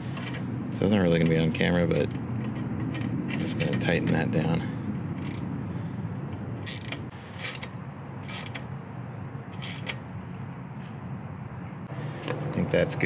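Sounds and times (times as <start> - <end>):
ratchet wrench clicking: 6.6 - 8.7, 9.6 - 10.0.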